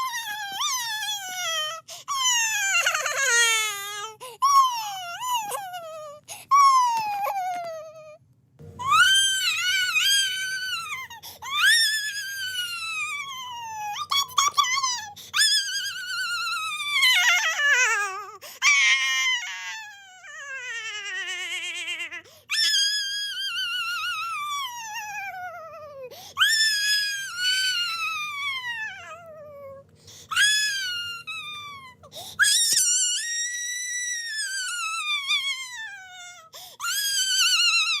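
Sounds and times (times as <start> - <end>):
baby crying: 8.8 - 22.8, 23.5 - 38.0.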